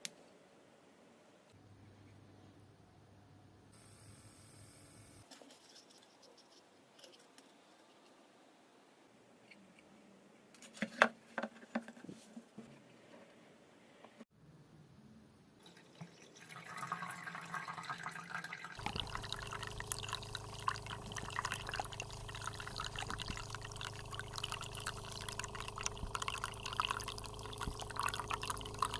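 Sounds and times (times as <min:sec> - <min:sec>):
faint water trickle: 0:15.6 - 0:28.9
water pouring and dripping: 0:15.6 - 0:28.9
water pump humming: 0:16.4 - 0:28.9.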